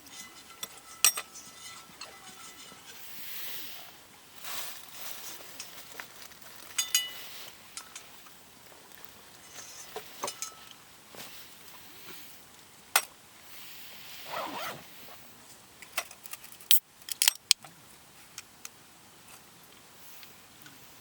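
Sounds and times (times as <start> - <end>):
short rustle: 14.0 - 15.6.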